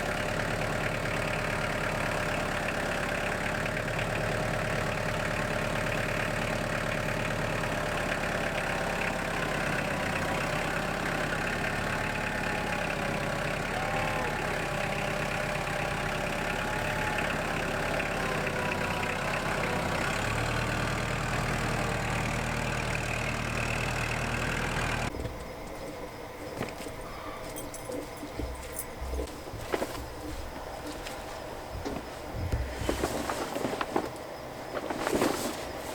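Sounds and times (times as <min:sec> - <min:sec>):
bandsaw sawmill engine drone: 0:00.0 - 0:27.3.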